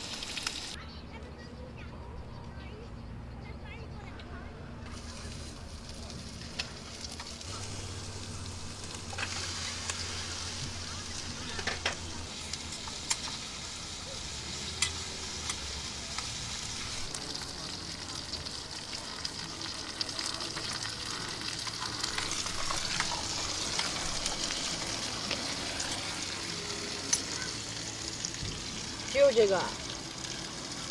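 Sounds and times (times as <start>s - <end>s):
food sizzling in a pan: 0.0s - 0.8s, 4.9s - 30.9s.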